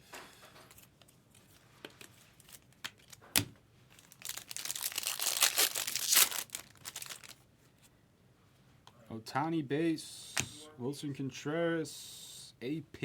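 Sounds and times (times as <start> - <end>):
wrapper crinkling and tearing: 2.4 - 7.4.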